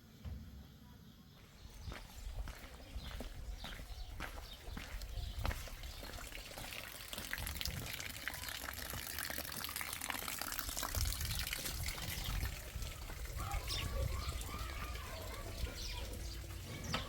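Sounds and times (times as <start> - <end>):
running water: 5.5 - 17.0.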